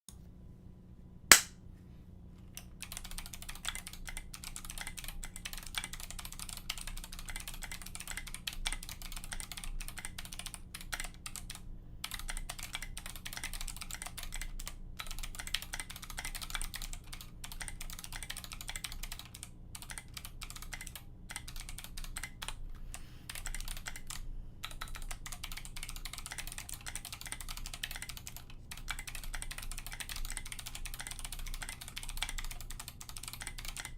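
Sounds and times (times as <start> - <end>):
single sharp click: 1.3 - 1.6
fast clicky keyboard typing: 2.8 - 22.6, 23.3 - 33.9.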